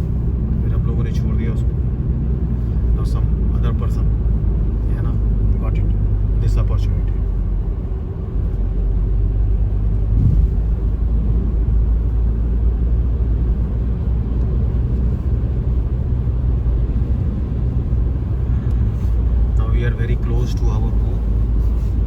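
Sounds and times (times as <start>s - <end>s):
car engine and tyres rumbling: 0.0s - 22.0s
thump: 10.1s - 10.6s.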